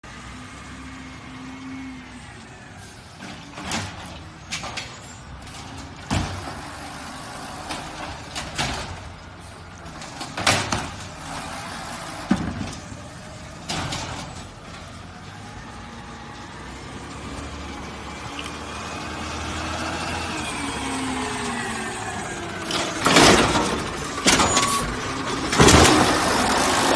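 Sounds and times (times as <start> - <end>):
garbage truck engine running: 0.1 - 26.9
metal bangs and clanks: 9.9 - 11.6, 22.6 - 26.9.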